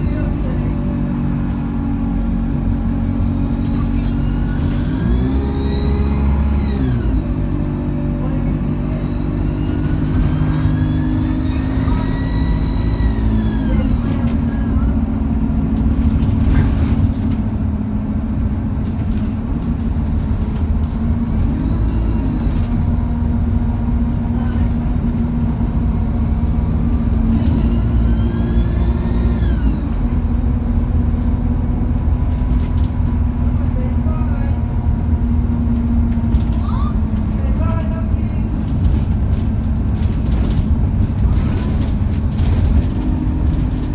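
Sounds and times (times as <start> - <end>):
high turbo whine: 0.0 - 31.2
bus diesel engine under load: 0.0 - 43.9.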